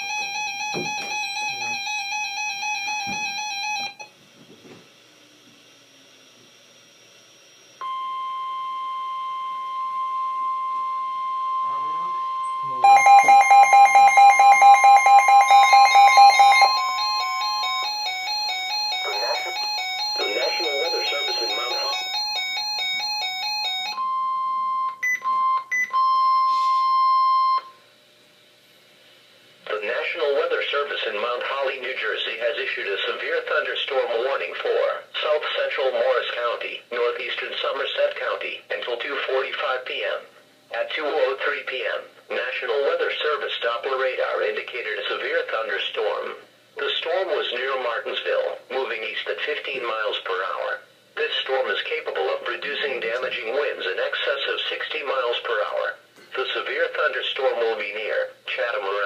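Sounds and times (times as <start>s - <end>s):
steady warning alarm tone: 0.0s - 4.2s, 7.4s - 27.8s
buzzy electronic tones: 11.7s - 23.0s.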